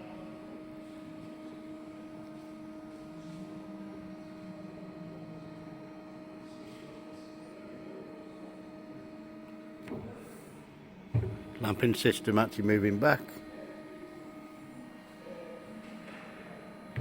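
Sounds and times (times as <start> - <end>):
bandsaw machine hum: 11.2 - 17.0.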